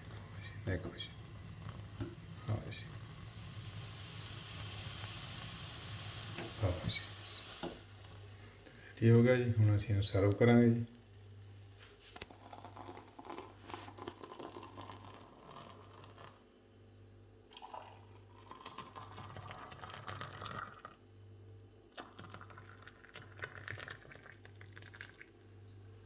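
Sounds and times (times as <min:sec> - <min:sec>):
thick liquid pouring into glass: 0:12.2 - 0:16.4, 0:17.5 - 0:21.1, 0:21.9 - 0:25.4.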